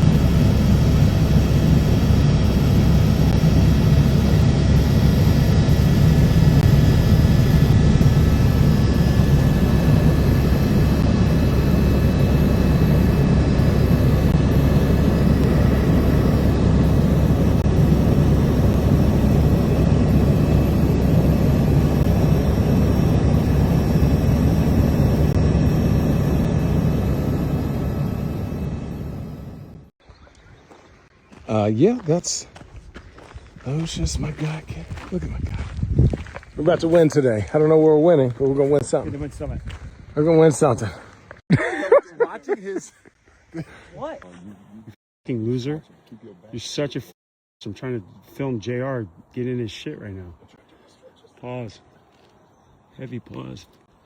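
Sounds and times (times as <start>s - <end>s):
helicopter engine and rotors: 0.0s - 29.9s.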